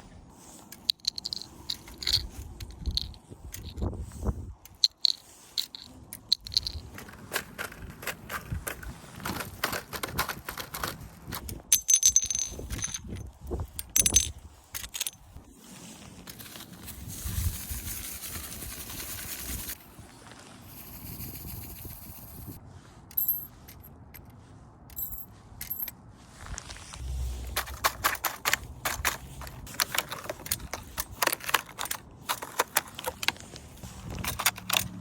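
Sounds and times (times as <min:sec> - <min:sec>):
litter clicks crunches and scrapes: 0:04.7 - 0:11.6, 0:27.0 - 0:35.0
metallic clinks: 0:23.1 - 0:24.3, 0:24.9 - 0:26.0.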